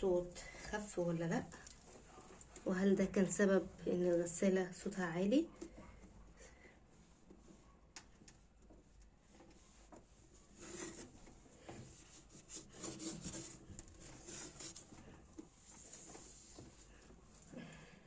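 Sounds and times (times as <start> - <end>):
objects rubbing and scraping: 9.3 - 17.5.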